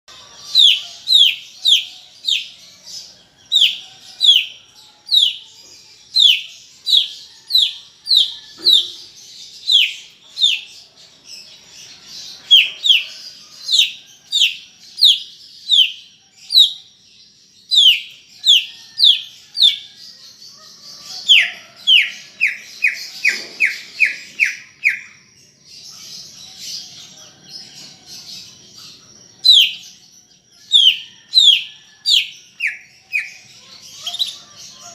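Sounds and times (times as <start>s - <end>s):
soft chatter: 25.5s - 30.1s.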